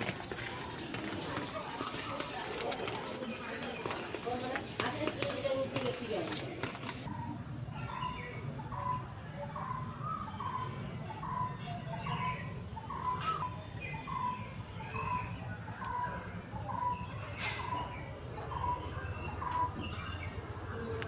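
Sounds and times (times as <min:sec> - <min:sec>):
crickets chirring: 0:00.0 - 0:21.0
other birds calling: 0:00.0 - 0:21.0.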